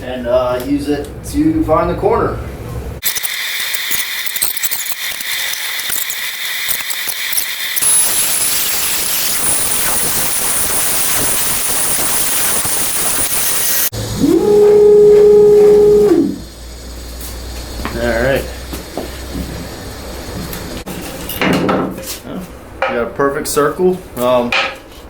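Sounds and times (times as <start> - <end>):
steady hiss with high whine: 3.0 - 13.9, 15.8 - 20.9
router motor humming: 3.0 - 20.8.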